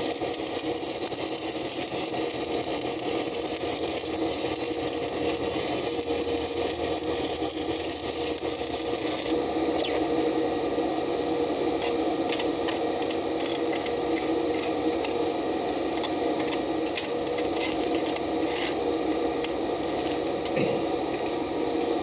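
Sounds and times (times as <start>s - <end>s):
welding arc crackling: 0.0s - 10.3s.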